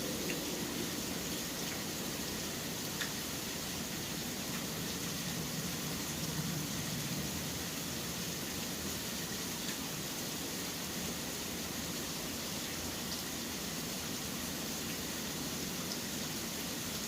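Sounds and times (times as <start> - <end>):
low city rumble: 0.0 - 9.2
steady rain hissing: 0.0 - 17.0
faint drip ticks: 2.9 - 3.2, 9.6 - 9.8.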